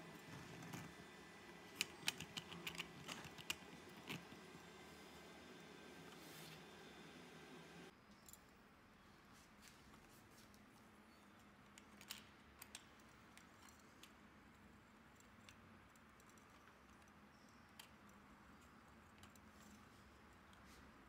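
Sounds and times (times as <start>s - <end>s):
small clicks: 1.6s - 4.7s, 11.7s - 14.6s, 15.2s - 20.7s.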